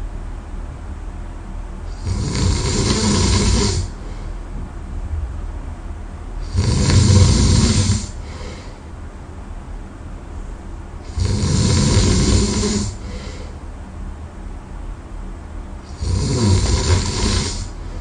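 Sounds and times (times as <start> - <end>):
person snoring loudly: 1.9 - 4.0, 6.4 - 8.6, 11.1 - 13.4, 15.9 - 17.8
quiet breathing: 1.9 - 4.6, 6.4 - 9.0, 11.0 - 13.7, 15.9 - 18.0.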